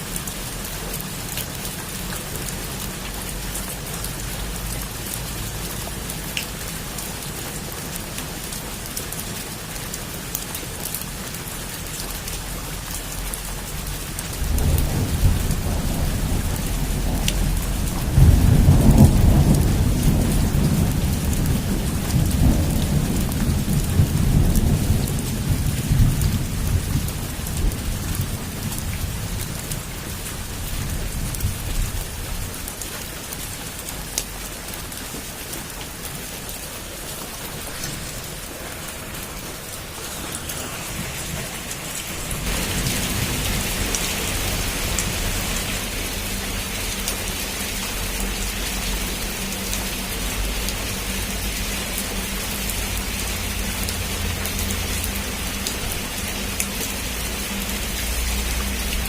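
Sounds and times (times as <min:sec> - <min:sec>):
heavy rain on a roof: 0:00.0 - 0:59.0
thunder rumble: 0:13.7 - 0:32.8, 0:36.2 - 0:47.3.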